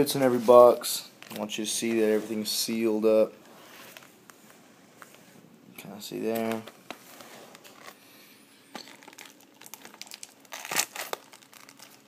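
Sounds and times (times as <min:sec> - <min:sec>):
plastic wrap crinkling: 0:06.3 - 0:08.0, 0:08.7 - 0:12.0.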